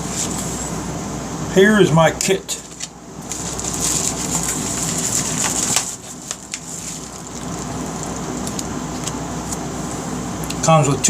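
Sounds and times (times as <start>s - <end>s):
packaging crackling and rustling: 2.6s - 9.2s.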